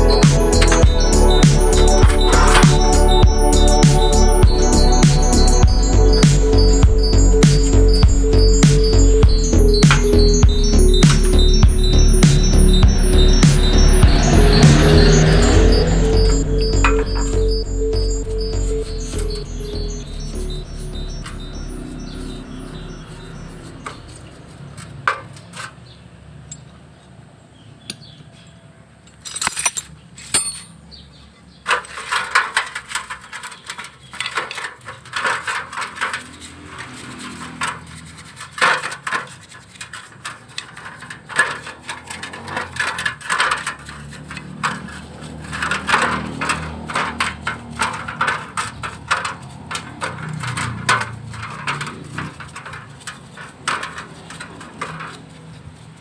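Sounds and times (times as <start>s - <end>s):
fast irregular metal clicking: 0.0s - 11.8s, 31.6s - 56.0s
scraping small metal parts: 0.0s - 25.9s, 29.1s - 56.0s.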